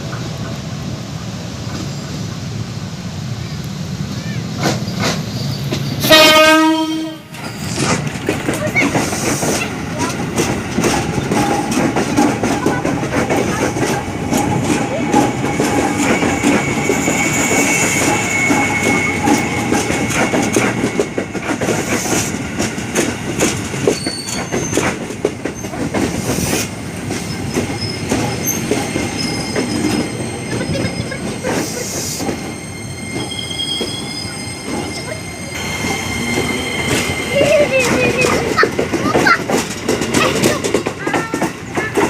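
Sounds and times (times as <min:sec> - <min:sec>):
train wheels clattering over rails: 0:04.1 - 0:42.0
thin steady wheel squeal: 0:04.2 - 0:06.4, 0:07.4 - 0:08.0, 0:14.0 - 0:22.4, 0:23.8 - 0:38.8.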